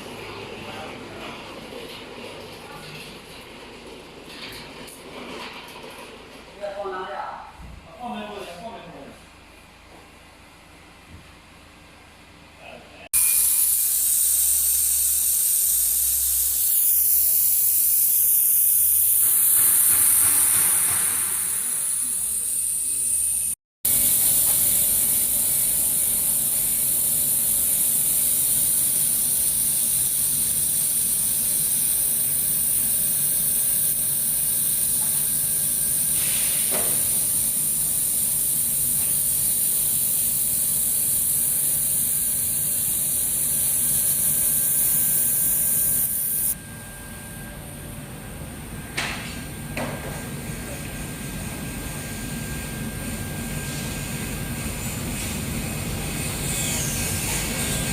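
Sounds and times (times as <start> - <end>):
shielding gas hissing: 13.1 - 46.6.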